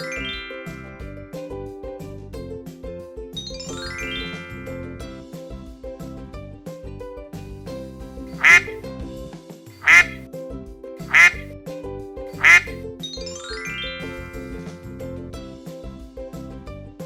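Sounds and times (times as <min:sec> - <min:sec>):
light background music: 0:00.0 - 0:11.4, 0:12.4 - 0:17.0
duck quacking: 0:08.4 - 0:08.8, 0:09.8 - 0:10.2, 0:11.1 - 0:11.5, 0:12.4 - 0:12.8.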